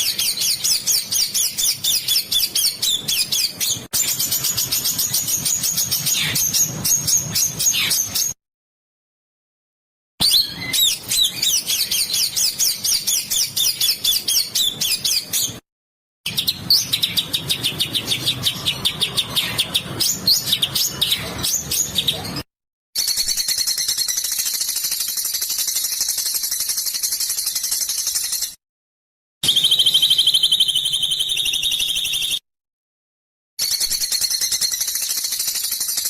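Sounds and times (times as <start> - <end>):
songbird harsh repeated notes: 29.4 - 32.4.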